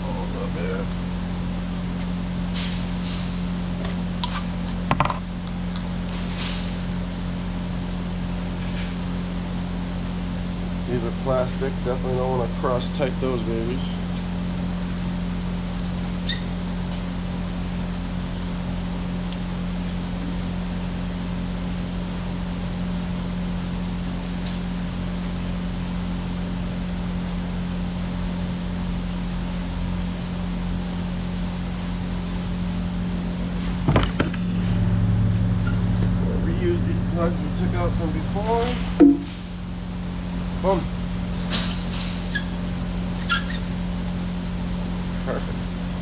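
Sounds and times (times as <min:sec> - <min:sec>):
pulsing machine hum: 0:16.6 - 0:41.4.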